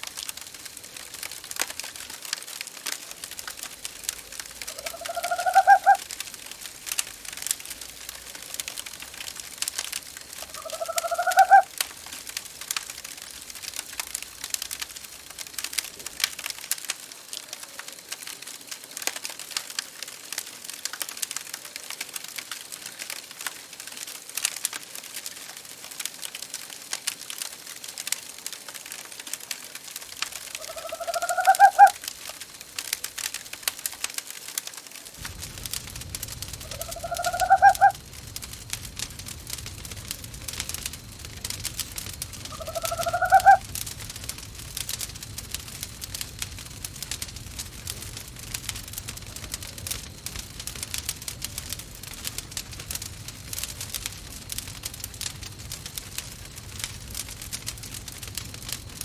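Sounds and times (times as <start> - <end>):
wood fire crackling: 0.0 - 59.0
owl calling: 4.6 - 6.1, 10.4 - 11.7, 30.6 - 32.0, 36.5 - 38.0, 42.4 - 43.7.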